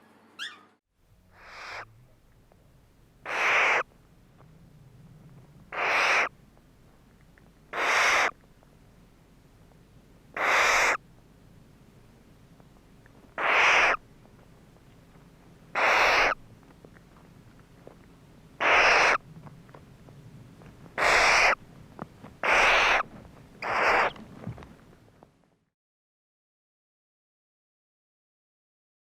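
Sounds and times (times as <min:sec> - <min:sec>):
bird hissing screeches: 0:01.4 - 0:01.9, 0:03.2 - 0:03.9, 0:05.7 - 0:06.3, 0:07.7 - 0:08.3, 0:10.4 - 0:11.0, 0:13.4 - 0:14.0, 0:15.8 - 0:16.4, 0:18.6 - 0:19.2, 0:21.0 - 0:21.6, 0:22.4 - 0:24.2.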